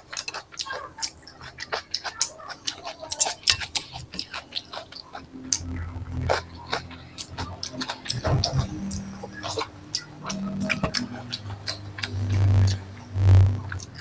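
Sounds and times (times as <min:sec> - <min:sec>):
chewing and crunching: 0:00.0 - 0:13.0
low steady hum: 0:04.8 - 0:14.0.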